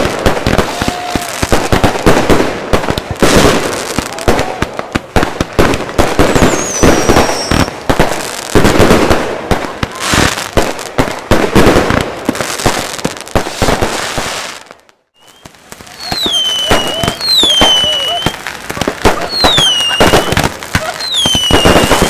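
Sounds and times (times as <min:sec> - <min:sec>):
falling firework whistle: 0:00.0 - 0:01.6, 0:06.2 - 0:07.8, 0:15.2 - 0:22.0
fireworks bangs and crackling: 0:00.0 - 0:22.0.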